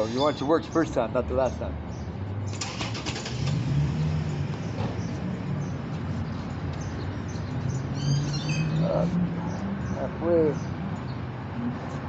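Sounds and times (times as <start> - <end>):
high falling bird chirps: 4.0 - 11.2.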